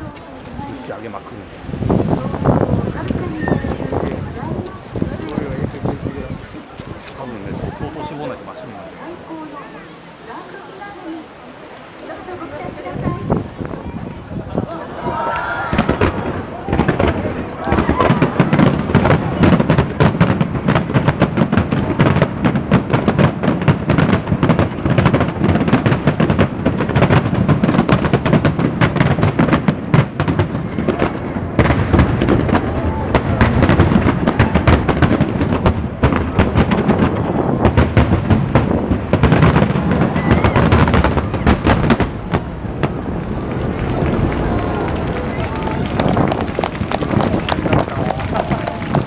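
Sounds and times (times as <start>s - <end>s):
fireworks bursts and crackles: 0.0s - 49.0s.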